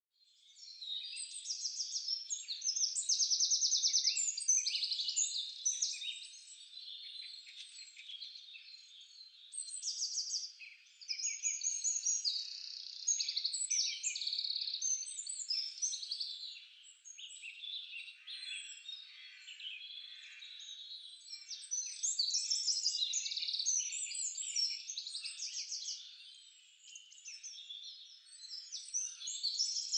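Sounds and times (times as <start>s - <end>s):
songbirds chirping and trilling: 0.2s - 29.9s.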